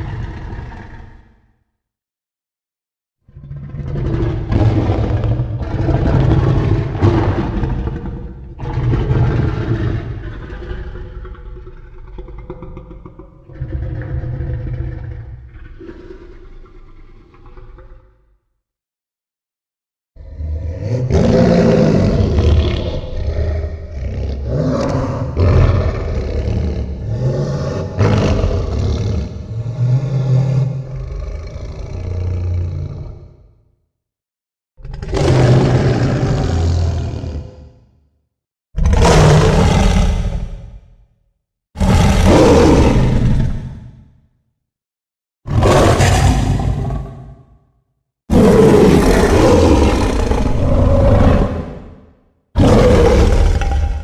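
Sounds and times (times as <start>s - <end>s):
monster growl: 20.2s - 33.6s, 34.8s - 37.9s, 38.8s - 40.9s, 41.8s - 44.1s, 45.5s - 47.6s, 48.3s - 54.0s.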